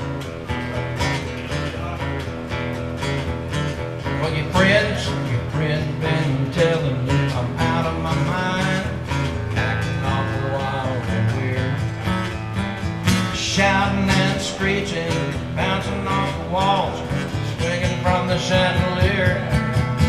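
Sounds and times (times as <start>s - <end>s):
guitar strumming: 0.0s - 20.0s
man singing: 4.0s - 20.0s.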